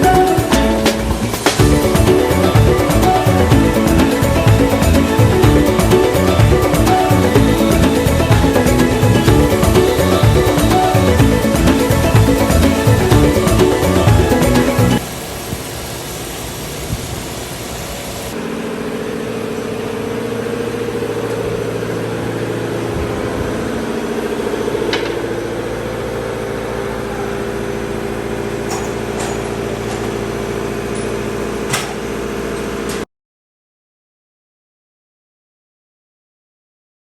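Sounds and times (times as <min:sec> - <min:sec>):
steady pitched drone: 0:00.0 - 0:15.0
machine tool humming: 0:00.0 - 0:27.0.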